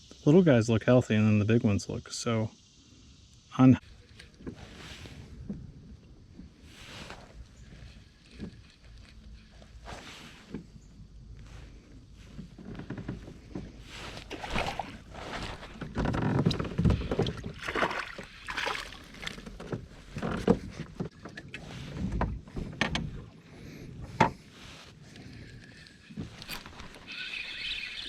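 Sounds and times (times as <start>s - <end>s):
paddle strokes splashing water: 13.8s - 15.9s, 17.0s - 19.6s.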